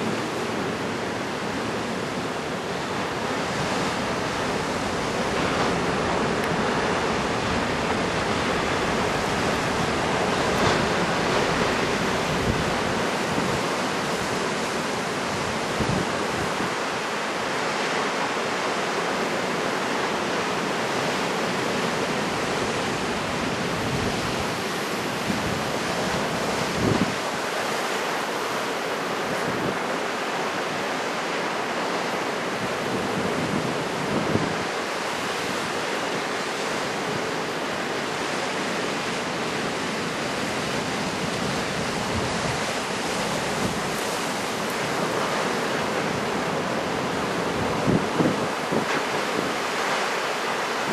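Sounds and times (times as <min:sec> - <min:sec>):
heavy surf breaking: 0:00.0 - 0:50.9
wind gusting on microphone: 0:02.0 - 0:17.0, 0:21.9 - 0:28.2, 0:32.4 - 0:50.9.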